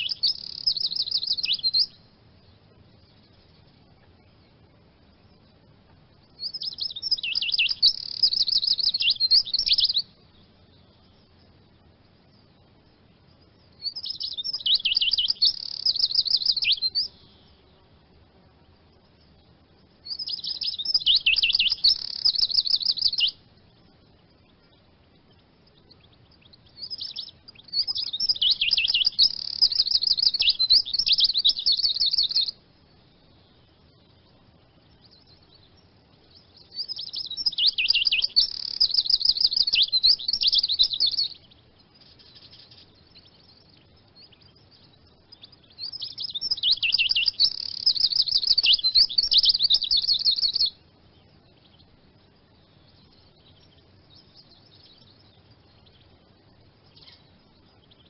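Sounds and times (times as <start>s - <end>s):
bird twittering song: 0.0s - 58.0s.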